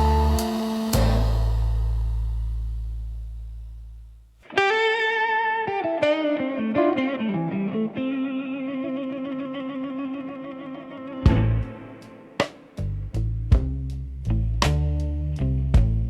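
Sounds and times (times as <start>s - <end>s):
low sustained bass tone: 0.0s - 4.4s, 11.3s - 11.8s, 12.8s - 16.0s
solo blues guitar: 4.4s - 12.7s.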